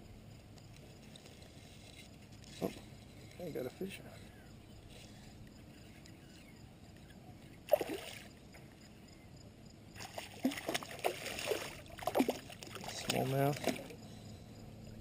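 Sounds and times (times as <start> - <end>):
fish splashing in water: 7.7 - 8.3, 10.0 - 14.0.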